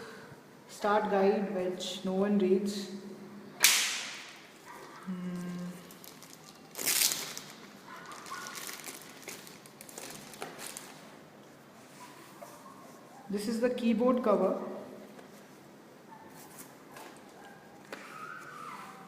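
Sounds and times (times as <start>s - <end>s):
packaging rustling: 4.6s - 11.2s.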